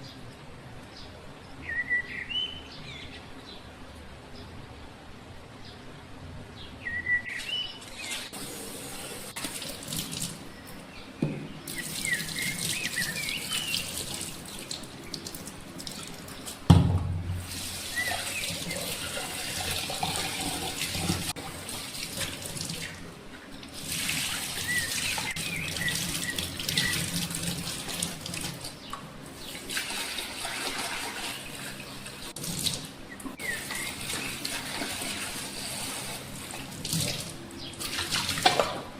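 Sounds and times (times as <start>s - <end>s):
tap running into a sink: 11.2s - 12.8s, 14.7s - 18.7s
sharp thud: 16.7s - 17.4s.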